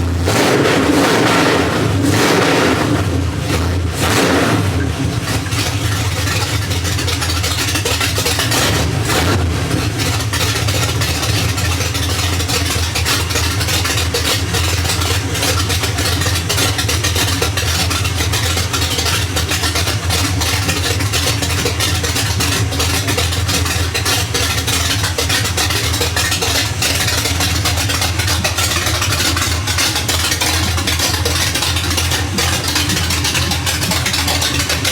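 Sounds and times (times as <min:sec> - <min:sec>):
truck engine running through open headers: 0:00.0 - 0:34.9.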